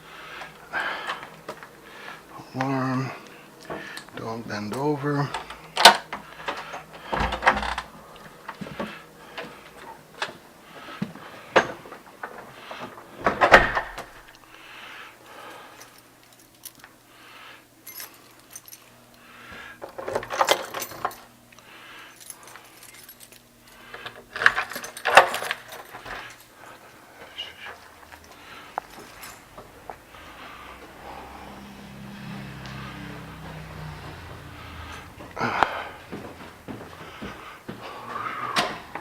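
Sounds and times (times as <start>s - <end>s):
jangling rattle: 17.8s - 18.9s, 20.1s - 21.2s, 22.1s - 26.5s, 27.6s - 29.7s.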